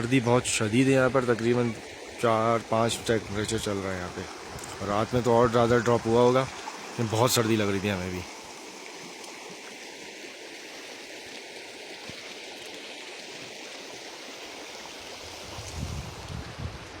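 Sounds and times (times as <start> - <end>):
flowing water rushing: 0.0 - 17.0
wind buffeting microphone: 15.2 - 17.0.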